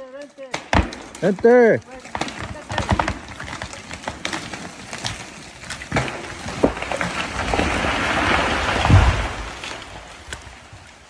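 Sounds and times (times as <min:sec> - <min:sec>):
branches crashing: 0:00.0 - 0:11.0
wood cracking: 0:00.0 - 0:11.0
tree trunk thudding on ground: 0:00.5 - 0:10.5.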